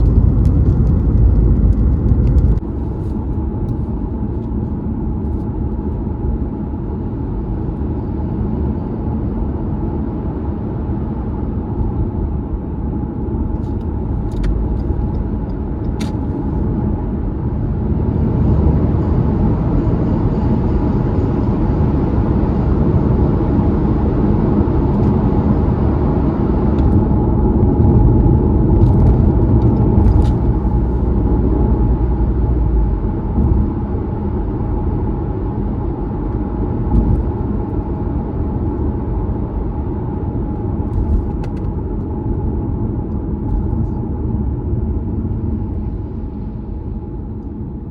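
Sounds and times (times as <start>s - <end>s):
tyre rumble on road: 0.0s - 3.3s, 26.6s - 31.6s.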